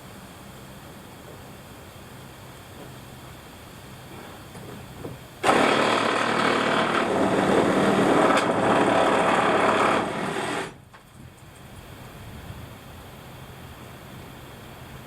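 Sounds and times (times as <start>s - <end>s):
power saw cutting wood: 5.4s - 10.8s.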